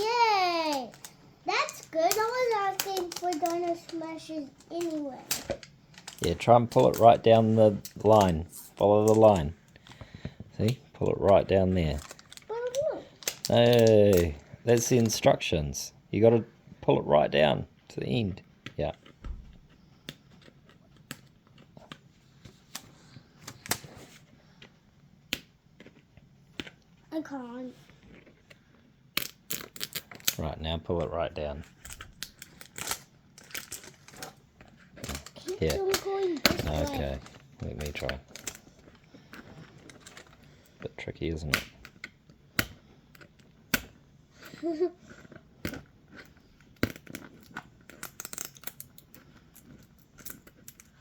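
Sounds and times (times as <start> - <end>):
packaging clicks and crackles: 0.0 - 15.3, 18.8 - 26.8, 28.0 - 30.5, 31.6 - 51.0
packaging rustle: 0.0 - 15.3, 31.7 - 42.2
plastic wrapper crinkling and tearing: 0.0 - 15.3, 27.8 - 30.5, 31.6 - 51.0
sharp snaps and clicks: 0.6 - 4.0, 12.0 - 15.1, 25.3 - 26.8, 28.1 - 30.5, 41.4 - 44.0, 45.6 - 51.0.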